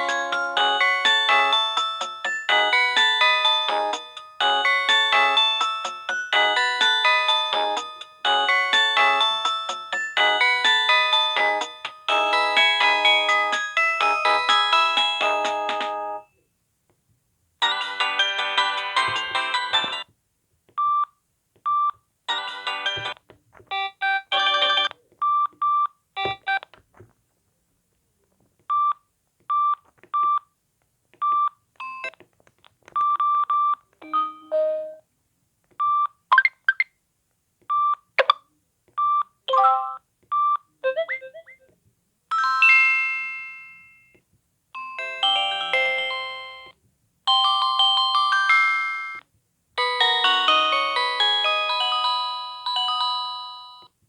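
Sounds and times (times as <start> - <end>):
polyphonic phone ringtones: 21.8 - 26.6, 39.5 - 41.7
phone chime ringing out: 39.5 - 40.0, 40.9 - 41.6
high electronic beeps: 40.8 - 41.7.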